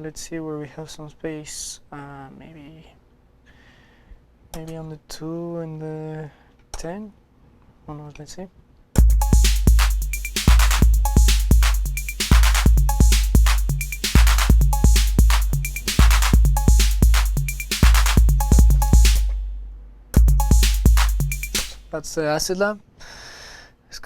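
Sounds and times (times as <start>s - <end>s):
booming bass drum: 9.0s - 21.9s
short pitched tom notes: 9.0s - 21.9s
hi-hat and snare hits: 9.0s - 22.0s.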